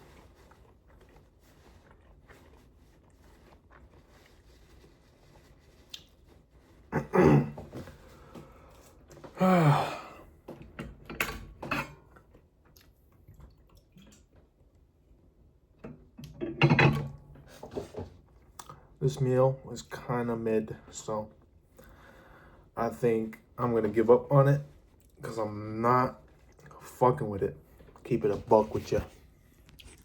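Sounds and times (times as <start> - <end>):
person chewing: 0.0 - 4.7, 5.9 - 6.3, 29.6 - 30.0.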